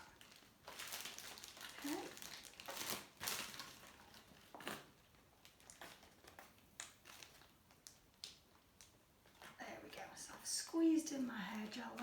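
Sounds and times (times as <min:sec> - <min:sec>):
plastic bag crinkling: 0:00.0 - 0:09.5.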